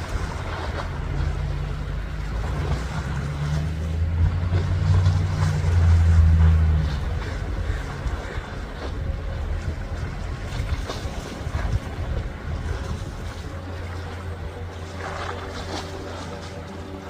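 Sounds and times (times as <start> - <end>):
boat engine droning: 0.0 - 17.0
water noise: 0.0 - 17.0
wind: 0.0 - 17.0.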